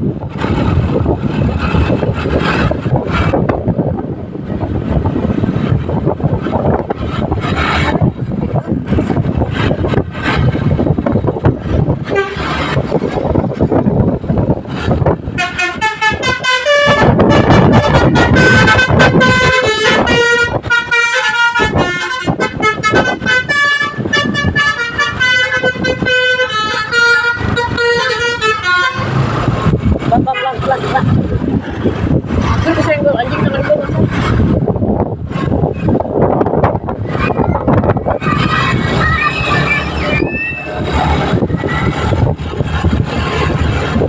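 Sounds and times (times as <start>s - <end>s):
passing vehicle noise: 0.0s - 44.0s
wind on microphone: 0.0s - 44.0s
multi-tone bus horn melody: 11.9s - 12.8s, 15.2s - 29.4s.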